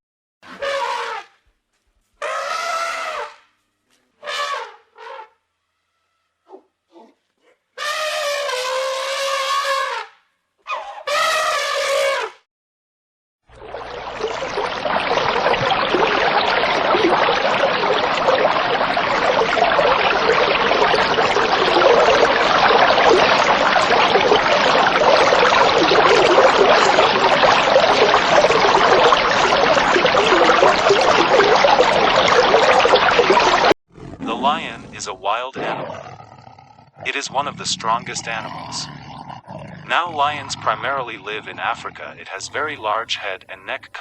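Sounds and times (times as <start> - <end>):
zebra calls: 2.2 - 3.4, 37.0 - 44.0.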